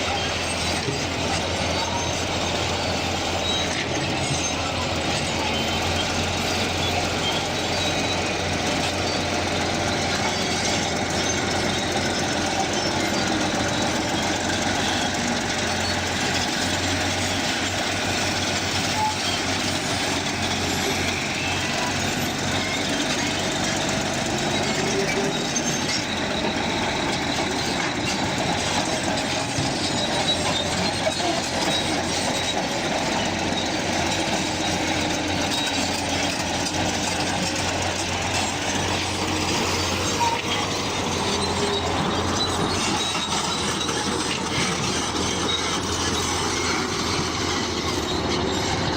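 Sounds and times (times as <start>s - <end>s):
bulldozer diesel engine: 0.0s - 48.9s
crawler tracks moving: 0.0s - 48.9s.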